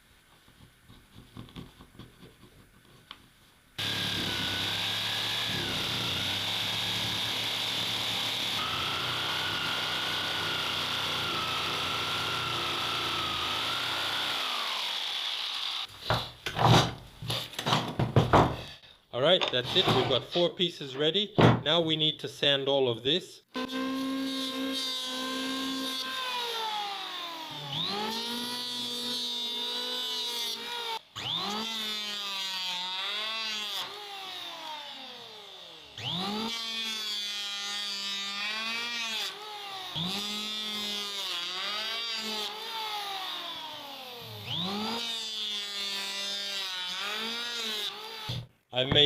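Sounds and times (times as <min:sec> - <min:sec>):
electric power sander whining: 0:03.8 - 0:15.9, 0:23.6 - 0:48.3.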